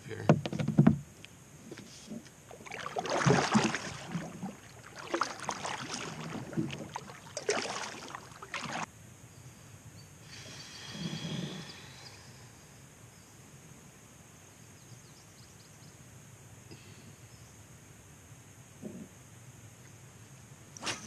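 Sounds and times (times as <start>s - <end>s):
paddle splashing in water: 1.8s - 8.9s.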